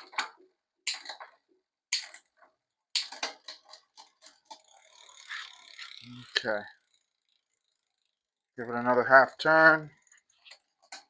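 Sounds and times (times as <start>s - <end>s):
bicycle chain clattering over cogs: 3.1s - 11.0s.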